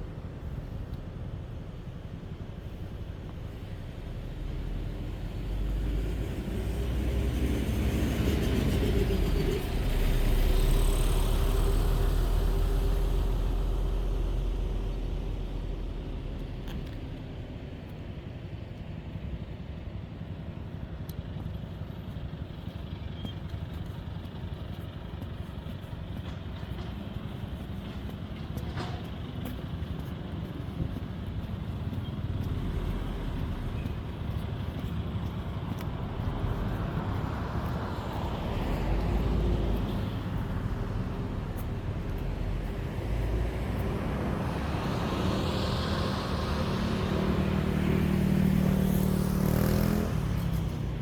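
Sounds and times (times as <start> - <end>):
city traffic: 0.0 - 51.0
vehicle passing close: 32.4 - 51.0.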